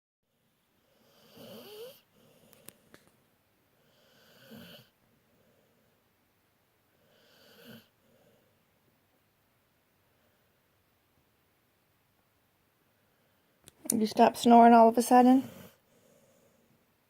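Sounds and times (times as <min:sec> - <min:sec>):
dog snoring: 0:00.8 - 0:02.6, 0:03.8 - 0:05.8, 0:06.9 - 0:08.5, 0:15.4 - 0:16.7.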